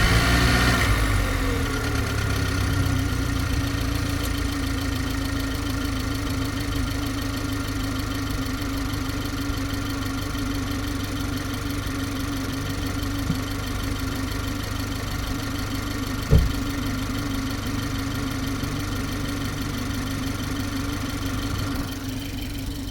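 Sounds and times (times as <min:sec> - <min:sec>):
car engine idling: 0:00.0 - 0:22.9
short thump: 0:16.2 - 0:16.8.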